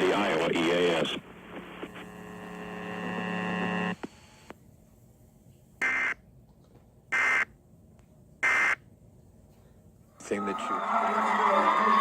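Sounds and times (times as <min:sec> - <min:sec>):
buzzing hum: 0:01.2 - 0:04.6.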